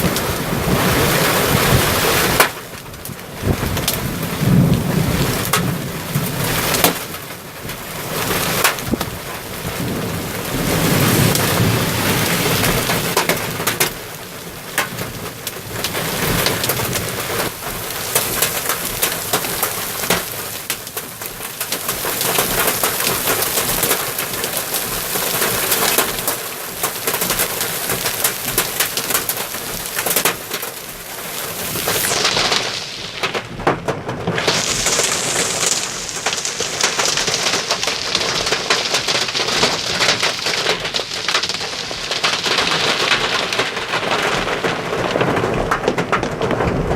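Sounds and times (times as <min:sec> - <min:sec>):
low rumble of thunder: 0:00.0 - 0:13.7, 0:27.3 - 0:46.9
heavy rain pouring: 0:00.0 - 0:46.9
raindrops tapping: 0:00.0 - 0:46.9.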